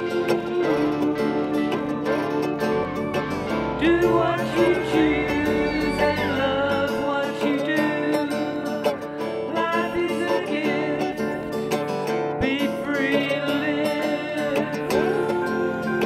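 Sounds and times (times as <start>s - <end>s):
country music with acoustic guitar: 0.0s - 16.0s.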